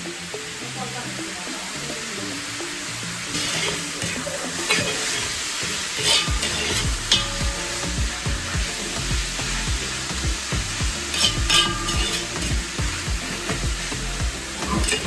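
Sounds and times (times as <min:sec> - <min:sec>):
background music with bass beat: 0:00.0 - 0:15.0
vegetables sizzling in a pot: 0:00.0 - 0:15.0
spoon scraping a pot: 0:06.0 - 0:07.9, 0:11.1 - 0:12.5.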